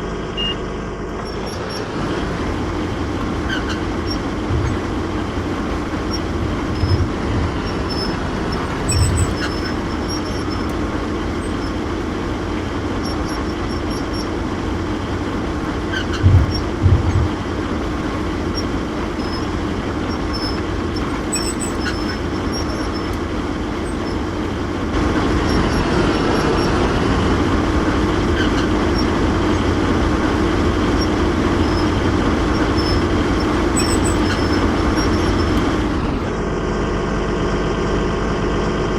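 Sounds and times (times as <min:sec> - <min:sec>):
vehicle rumble: 0:00.0 - 0:38.8
short low thumps: 0:01.2 - 0:15.2, 0:16.0 - 0:24.2.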